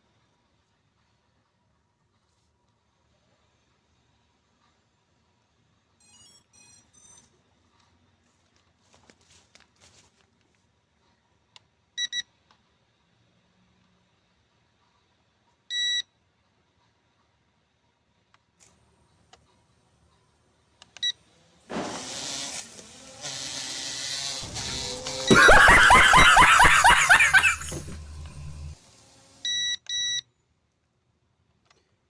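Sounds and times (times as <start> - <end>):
drone motors whirring: 21.9 - 29.3.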